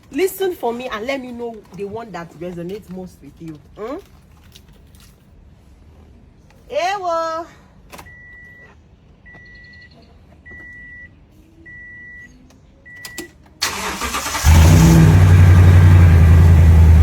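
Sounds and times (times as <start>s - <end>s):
starter motor cranking: 13.6s - 17.0s
car engine running: 14.0s - 17.0s.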